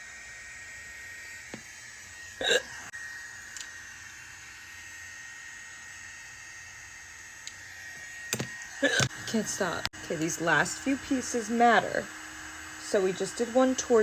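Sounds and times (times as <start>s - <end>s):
woman hiccuping: 2.4s - 2.8s, 8.8s - 9.1s.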